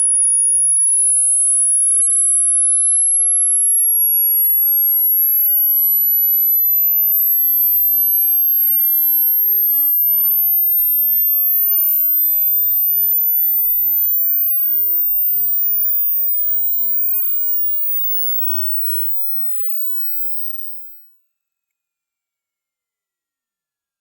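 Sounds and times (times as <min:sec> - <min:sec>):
high-pitched rising sine tone: 0:04.0 - 0:21.1.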